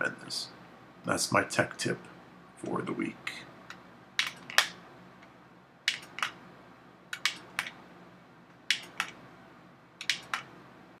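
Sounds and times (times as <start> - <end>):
sharp clicks in pairs: 3.7 - 4.8, 5.9 - 6.4, 7.1 - 7.8, 8.7 - 9.2, 10.0 - 10.5.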